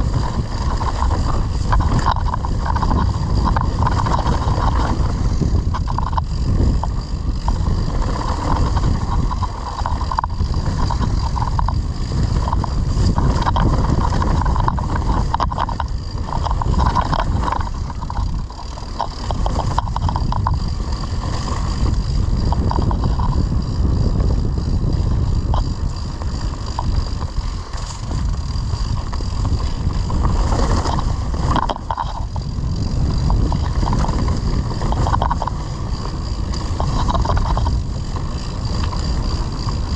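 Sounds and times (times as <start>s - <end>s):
bike tyres rumbling off-road: 0.0s - 39.9s
wind on microphone: 0.0s - 39.9s.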